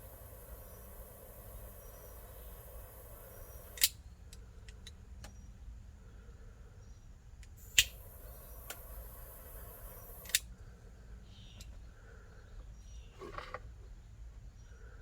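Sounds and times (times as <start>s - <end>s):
heat tool hissing: 0.0s - 4.0s, 7.6s - 10.4s
heat tool switch click: 3.3s - 4.0s, 7.6s - 9.2s.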